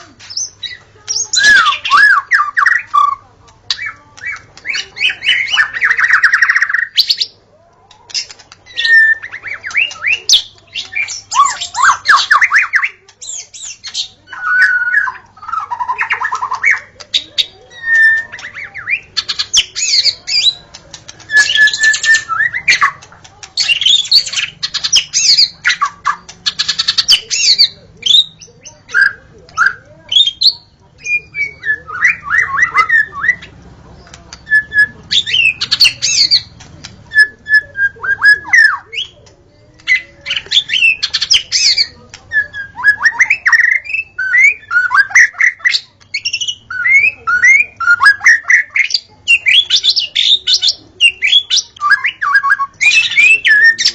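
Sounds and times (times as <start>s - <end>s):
bird singing whistles: 0.3s - 3.1s, 8.7s - 16.8s, 17.7s - 20.6s, 21.3s - 22.9s, 39.9s - 53.9s.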